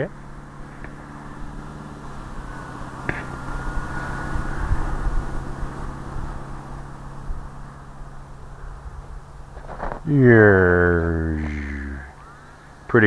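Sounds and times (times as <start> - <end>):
electric motor and propeller whining: 0.0 - 13.0
wind rumbling on microphone: 0.7 - 10.5.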